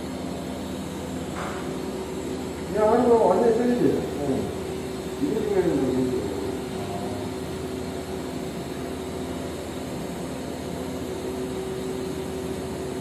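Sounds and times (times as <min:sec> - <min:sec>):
welding arc hissing: 0:00.0 - 0:11.4
steady hum: 0:00.0 - 0:13.0.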